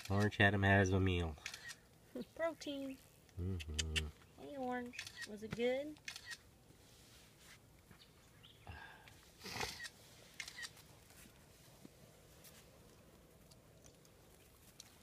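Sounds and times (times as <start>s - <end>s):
puppies rustling and scuffing: 10.8s - 15.0s.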